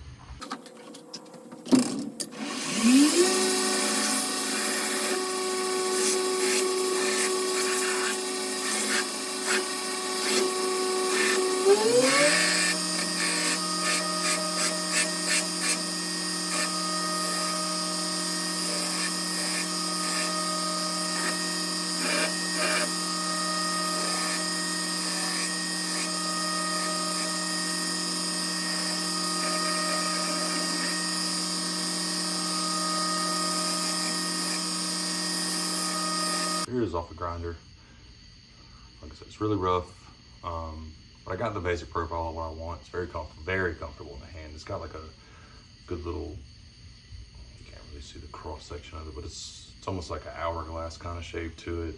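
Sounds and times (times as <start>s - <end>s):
belt grinder running: 0.4s - 36.7s
scratchy grinding strokes: 0.5s - 36.7s.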